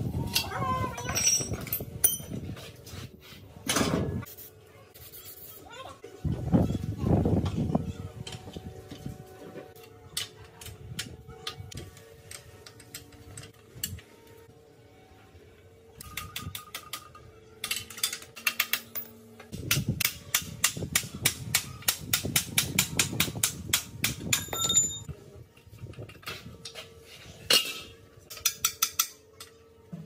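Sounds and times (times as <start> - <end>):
hand tools tapping on metal: 0.3 - 2.4, 16.0 - 25.1, 27.5 - 29.6.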